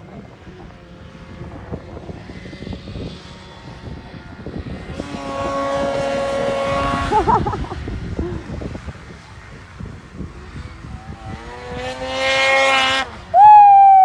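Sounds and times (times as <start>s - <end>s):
low rumbling and buffeting: 0.0s - 12.3s
snowmobile engine high revs: 0.0s - 14.0s.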